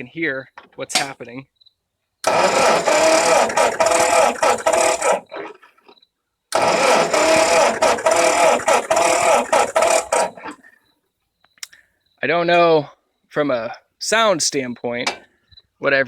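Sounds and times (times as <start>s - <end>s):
tractor starter cranking engine: 2.2s - 5.7s, 6.5s - 10.8s.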